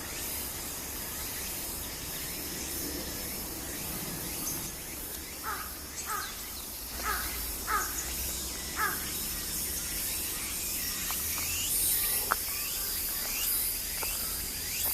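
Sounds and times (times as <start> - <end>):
insects shrilling: 0.0 - 14.9
crow cawing: 5.4 - 6.4, 7.0 - 8.1, 8.8 - 9.1.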